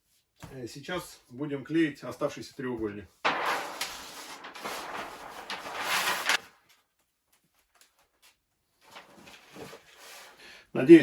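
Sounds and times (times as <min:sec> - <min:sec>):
rustling and scraping: 0:03.2 - 0:06.6.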